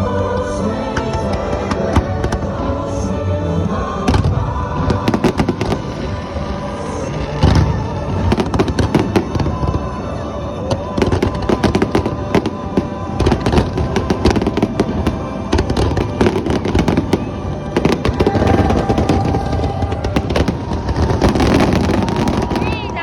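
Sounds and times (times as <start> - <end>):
music playing: 0.0 - 23.0
fireworks bangs and crackles: 4.0 - 10.0, 10.6 - 23.0.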